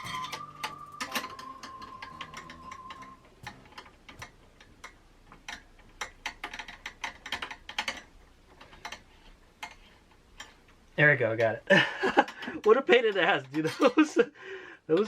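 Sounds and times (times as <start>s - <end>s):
thin steady tone: 0.0s - 4.4s
small metal clicks: 0.0s - 11.5s.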